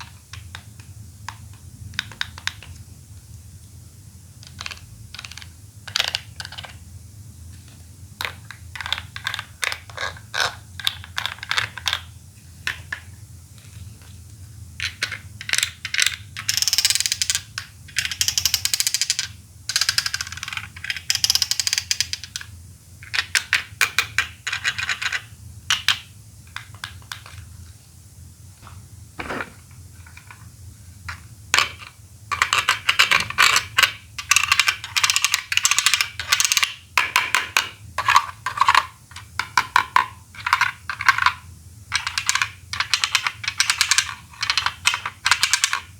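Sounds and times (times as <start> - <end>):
plastic toys clicking and snapping: 4.4 - 6.8, 14.8 - 22.5, 31.6 - 45.9.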